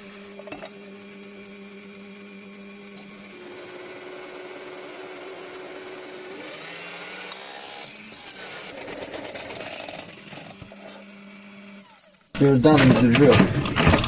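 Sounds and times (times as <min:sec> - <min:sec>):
electric drill cutting into steel: 0:00.0 - 0:14.0.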